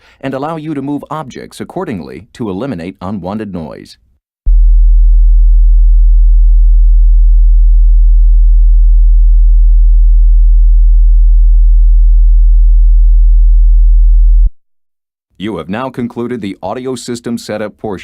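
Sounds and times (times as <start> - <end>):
deep sine test tone: 4.5 - 14.6.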